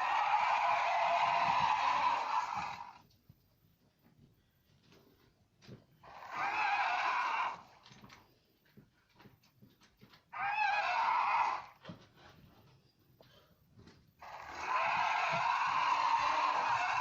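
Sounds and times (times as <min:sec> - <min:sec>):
dinosaur roar: 0:00.0 - 0:03.0, 0:06.0 - 0:07.7, 0:10.4 - 0:11.8, 0:14.2 - 0:17.0.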